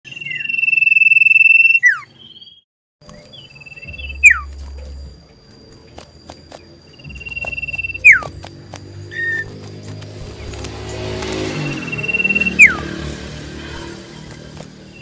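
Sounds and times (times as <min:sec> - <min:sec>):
bird whistling call: 0:00.1 - 0:04.5, 0:06.9 - 0:08.4, 0:09.0 - 0:09.5, 0:11.6 - 0:13.0.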